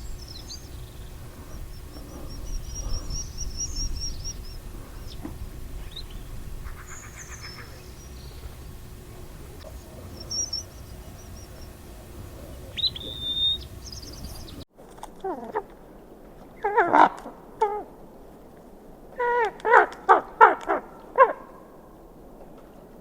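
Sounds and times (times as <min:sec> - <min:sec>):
falling whistled bird calls: 0:00.0 - 0:14.6
birds chirping: 0:00.0 - 0:14.7
wind rumble: 0:00.0 - 0:14.7.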